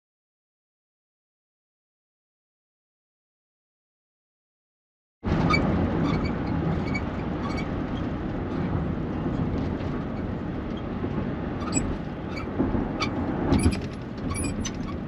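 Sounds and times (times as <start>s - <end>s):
moving van rumble: 5.2s - 15.0s
wheelchair squeaking chirps: 11.6s - 15.0s.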